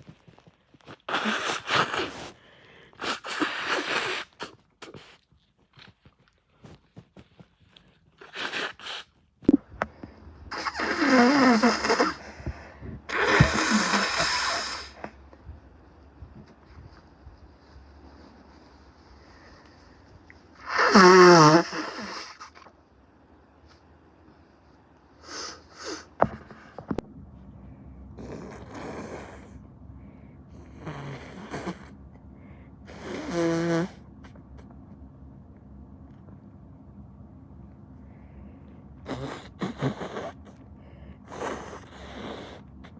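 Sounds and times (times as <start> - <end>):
person blowing nose: 0.9 - 2.4, 3.0 - 5.2, 8.2 - 9.2, 10.5 - 12.3, 13.1 - 15.1, 20.6 - 22.7, 32.9 - 34.0, 39.1 - 40.5, 41.3 - 42.9.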